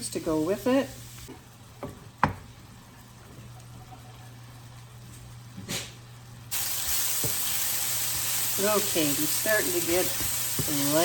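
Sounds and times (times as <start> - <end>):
mushrooms sizzling in butter: 0.1 - 1.3, 6.5 - 11.0.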